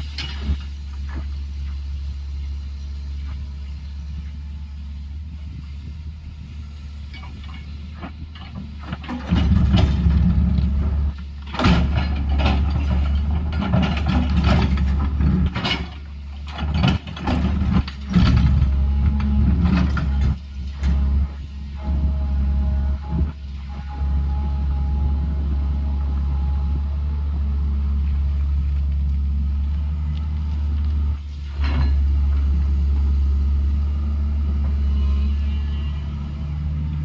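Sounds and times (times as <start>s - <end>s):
steel clanks and rattles: 0.0s - 1.3s, 7.0s - 22.3s, 31.4s - 32.6s
excavator diesel engine revving: 7.9s - 37.0s.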